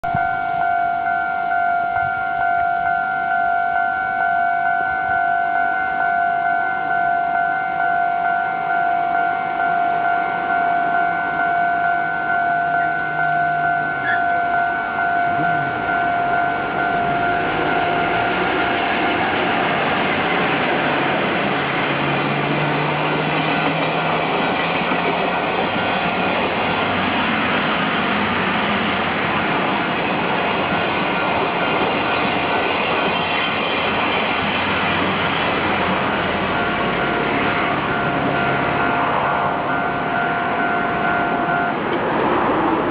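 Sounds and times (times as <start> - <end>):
level crossing warning bell: 0.0 - 42.0
train wheels rumbling and rattling: 15.3 - 42.9.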